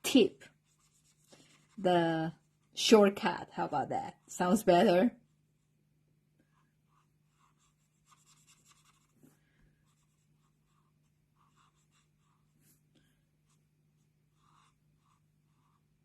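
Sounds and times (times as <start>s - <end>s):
marker scratching on paper: 0.1s - 2.8s, 6.9s - 12.8s, 13.4s - 16.0s.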